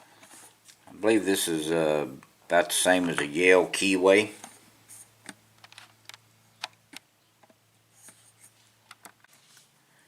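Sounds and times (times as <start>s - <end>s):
soft rustles: 8.0s - 9.8s.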